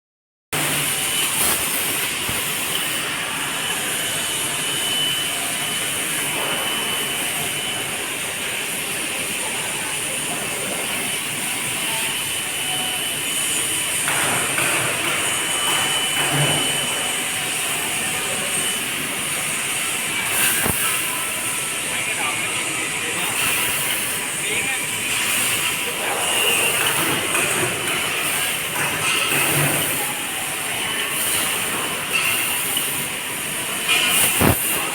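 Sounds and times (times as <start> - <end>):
laser cutter loud hiss: 0.6 - 34.9
thin high whistle: 0.9 - 8.4.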